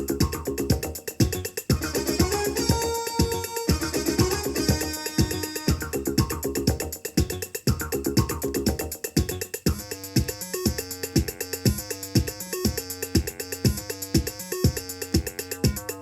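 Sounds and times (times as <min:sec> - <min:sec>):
drum machine kick: 0:00.0 - 0:16.0
repeating synthesizer riff: 0:01.7 - 0:06.0.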